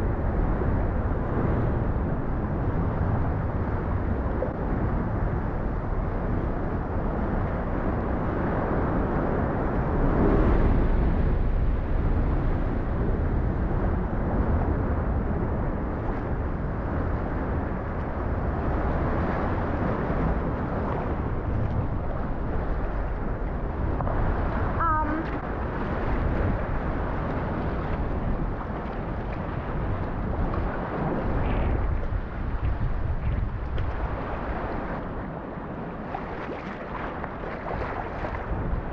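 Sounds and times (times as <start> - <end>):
wind rushing over microphone: 0.0 - 38.9
water washing around kayak: 8.8 - 38.9.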